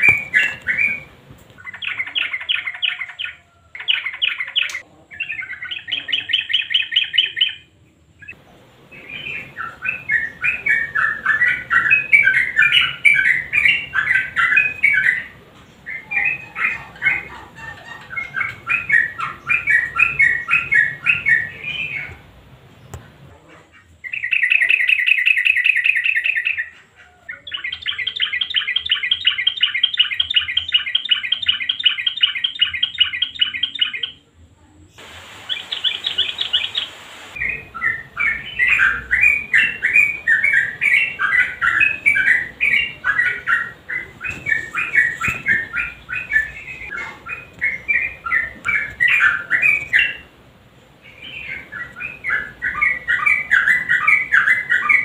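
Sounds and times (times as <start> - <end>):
bird bubbly chattering: 35.2 - 50.3.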